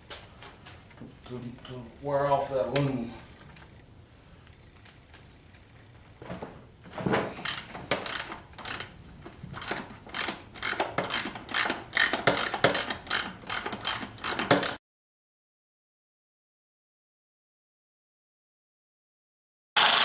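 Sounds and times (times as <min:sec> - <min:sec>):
ratchet wrench clicking: 0:07.4 - 0:08.9, 0:09.6 - 0:14.8.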